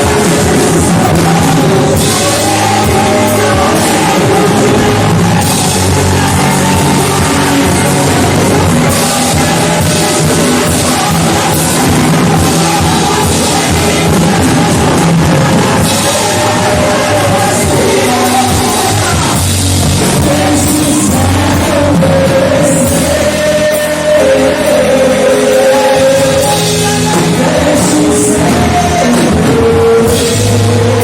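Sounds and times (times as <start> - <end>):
rock band music: 0.0 - 31.0.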